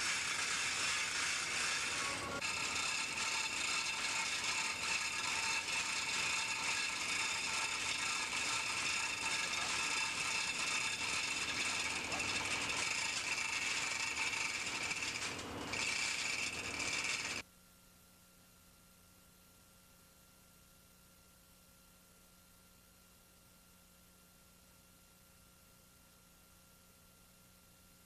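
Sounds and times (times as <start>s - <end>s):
machinery hiss and clatter: 0.0s - 17.4s.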